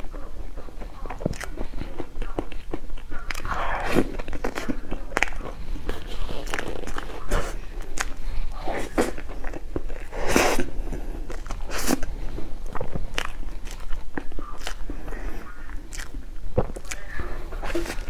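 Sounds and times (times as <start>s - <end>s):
food crunching: 0.0s - 18.0s
mouth smacks: 0.0s - 18.0s.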